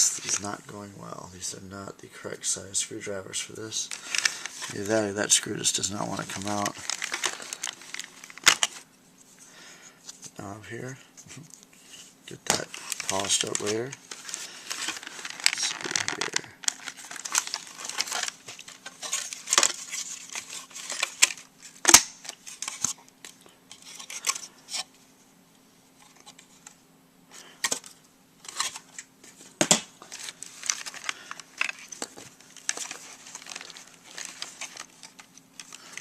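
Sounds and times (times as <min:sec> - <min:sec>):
plastic parts clicking and rattling: 0:03.9 - 0:05.0, 0:06.0 - 0:08.8, 0:12.4 - 0:24.9, 0:27.6 - 0:36.0.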